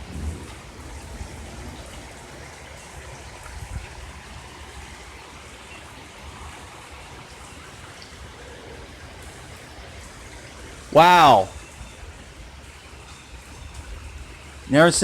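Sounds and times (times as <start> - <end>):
heavy rain and hail: 0.0 - 5.4.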